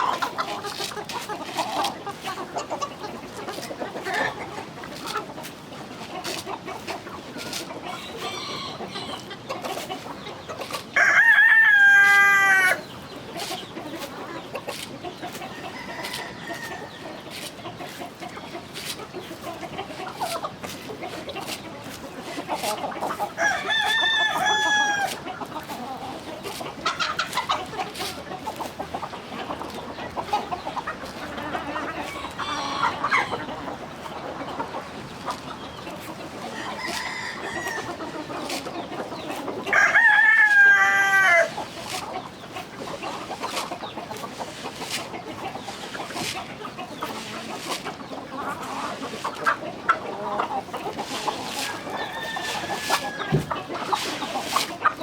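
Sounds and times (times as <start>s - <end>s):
chickens clucking: 0.0s - 55.0s
rooster crowing: 8.1s - 9.2s, 11.0s - 12.8s, 23.4s - 25.2s, 36.5s - 38.0s, 39.7s - 41.5s, 52.0s - 53.5s.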